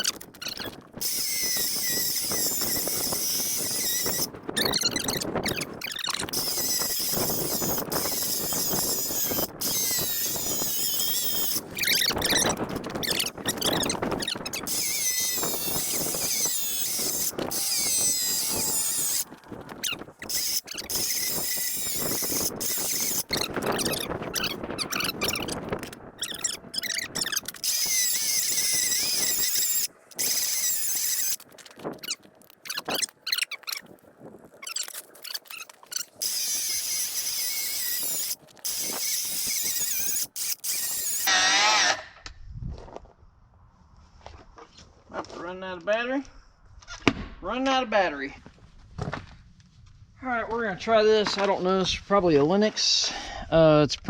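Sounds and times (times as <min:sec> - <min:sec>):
cut-off saw cutting rubber tire: 0:01.0 - 0:12.4, 0:13.1 - 0:25.4, 0:26.2 - 0:31.4, 0:36.2 - 0:42.2.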